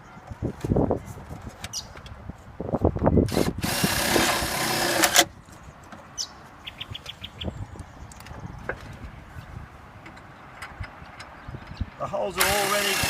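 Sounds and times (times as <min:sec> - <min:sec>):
cordless drill motor: 0:03.3 - 0:05.3, 0:12.4 - 0:13.0.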